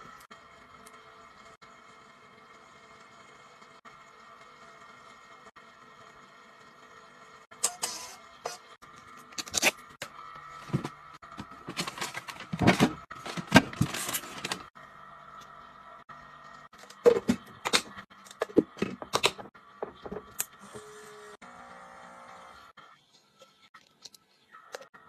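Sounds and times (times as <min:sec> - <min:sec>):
packaging rustling: 0:11.4 - 0:14.7.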